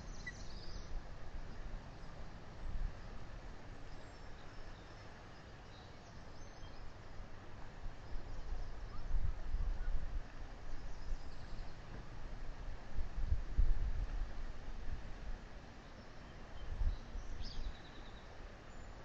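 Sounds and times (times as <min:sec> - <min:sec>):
wind gusting over microphone: 0:11.8 - 0:15.5.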